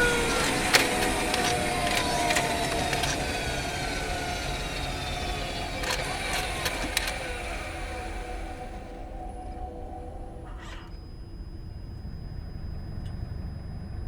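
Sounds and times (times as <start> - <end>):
sharp clicks: 0.0 - 8.8
drivetrain whines falling in pitch: 0.0 - 14.0
road and drivetrain rumble: 0.0 - 14.0.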